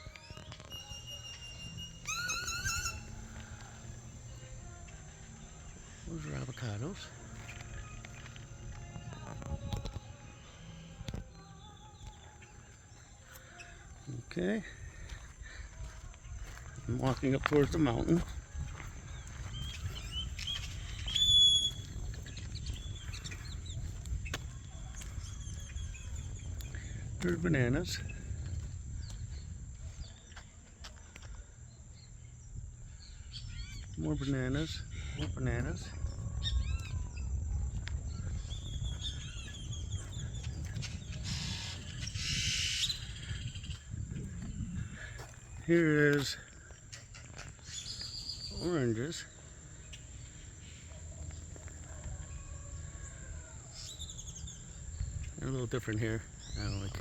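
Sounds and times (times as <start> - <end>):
steady high tone: 0.0 - 13.4
birds chirping: 0.0 - 57.0
high whistled note: 0.2 - 3.4
hissing buzzy bird call: 0.7 - 4.3, 41.2 - 43.7.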